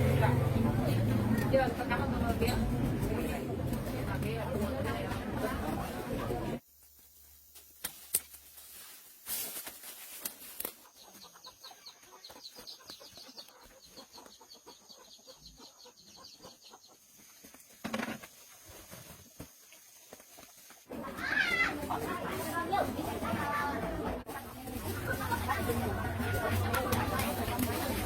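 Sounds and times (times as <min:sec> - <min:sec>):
bird chirping: 0:10.8 - 0:17.6
knocks and scraping: 0:17.3 - 0:23.2.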